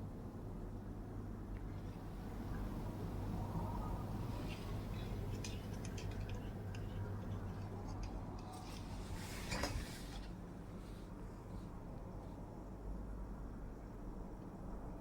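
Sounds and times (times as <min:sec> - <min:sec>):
steady low hum: 0:00.0 - 0:13.9
small metal tools clicking: 0:04.4 - 0:08.8.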